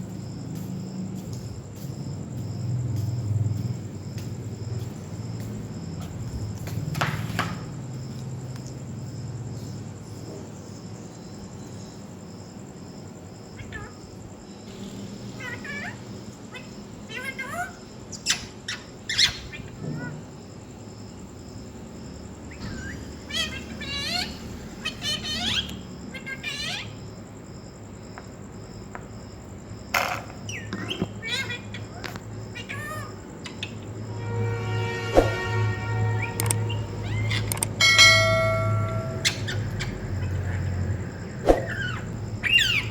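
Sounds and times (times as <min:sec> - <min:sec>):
parrot chirping: 0:13.6 - 0:13.9, 0:15.4 - 0:20.2, 0:22.5 - 0:27.0, 0:30.5 - 0:33.8, 0:36.2 - 0:40.9, 0:41.5 - 0:42.9
parrot warbling call: 0:15.4 - 0:20.2, 0:22.6 - 0:27.0, 0:30.8 - 0:33.2, 0:36.1 - 0:40.7, 0:41.6 - 0:42.9
high pulsed chirping: 0:34.1 - 0:42.9.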